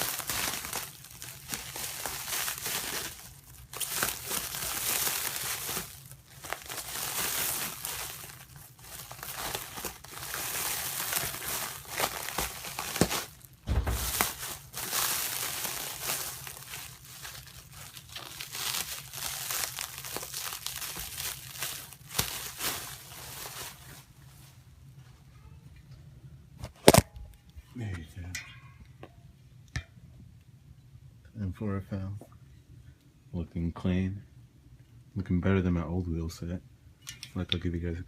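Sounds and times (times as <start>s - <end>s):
packing material crinkling and tearing: 0.0s - 24.1s, 26.6s - 27.1s
dull thump: 13.6s - 14.5s
sharp knocks: 13.7s - 14.3s.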